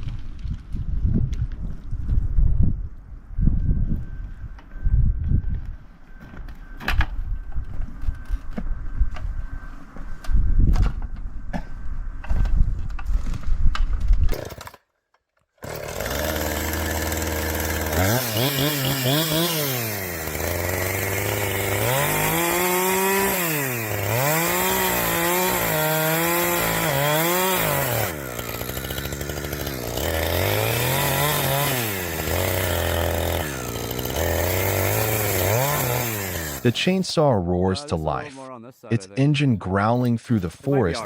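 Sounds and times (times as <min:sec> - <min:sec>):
chainsaw engine revving: 0:14.3 - 0:14.8, 0:15.6 - 0:36.9.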